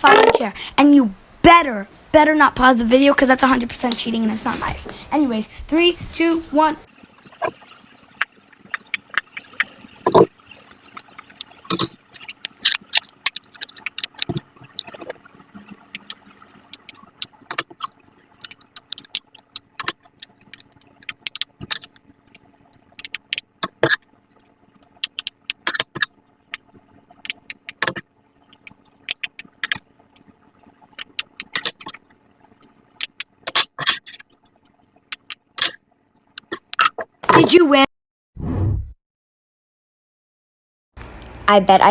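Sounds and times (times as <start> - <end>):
fidget toy bubbles popping: 7.2 - 24.1, 24.9 - 29.8, 30.8 - 32.0.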